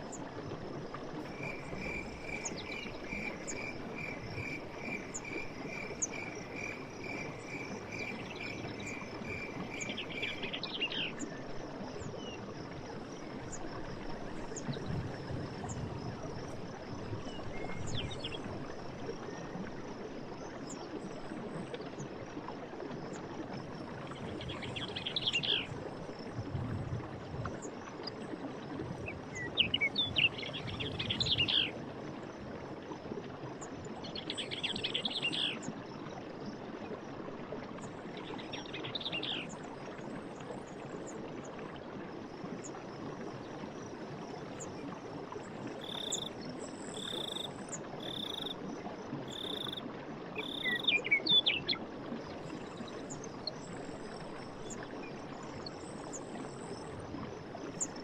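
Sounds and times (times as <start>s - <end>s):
stream water rushing: 0.0s - 14.6s, 28.0s - 58.0s.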